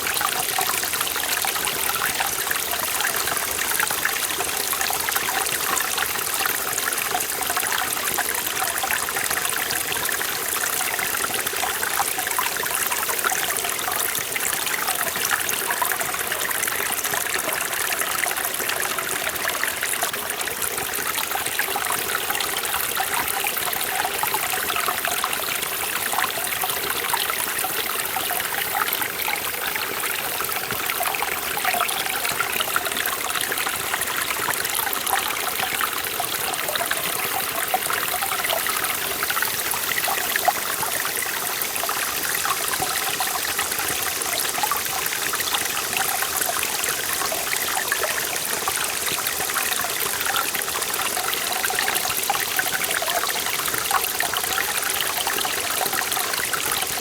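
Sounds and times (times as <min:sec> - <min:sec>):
stream splashing over rocks: 0:00.0 - 0:57.0.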